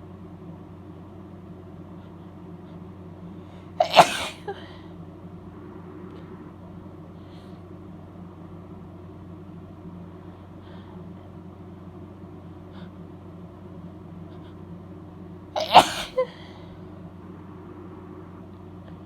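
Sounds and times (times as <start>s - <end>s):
steady low hum: 0.0s - 19.0s
woman sneezing: 3.8s - 4.7s, 15.6s - 16.4s.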